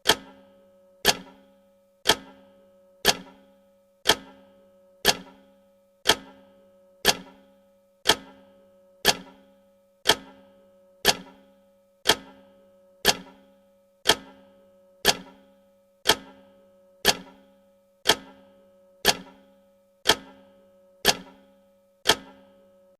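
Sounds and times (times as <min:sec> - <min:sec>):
clock ticking: 0:00.0 - 0:00.4, 0:01.0 - 0:01.4, 0:02.0 - 0:02.4, 0:03.0 - 0:03.4, 0:04.0 - 0:05.4, 0:06.0 - 0:07.4, 0:08.0 - 0:08.4, 0:09.0 - 0:09.4, 0:10.0 - 0:11.4, 0:12.0 - 0:13.4, 0:14.0 - 0:15.4, 0:16.0 - 0:17.4, 0:18.0 - 0:19.4, 0:20.0 - 0:22.5
faint steady hum: 0:00.0 - 0:22.9.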